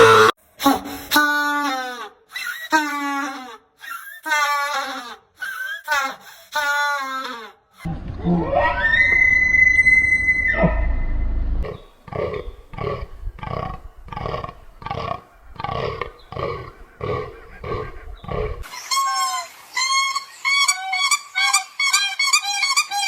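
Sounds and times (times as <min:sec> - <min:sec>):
animal deep roar-like calls: 0:07.9 - 0:18.7
high whistling chirp: 0:08.5 - 0:11.3.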